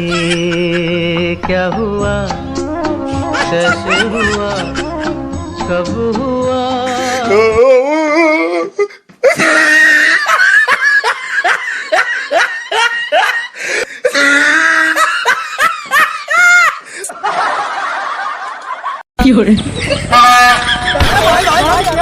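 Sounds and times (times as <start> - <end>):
person laughing loudly: 0.0 - 1.1, 3.1 - 5.2, 9.2 - 19.0, 19.7 - 22.0.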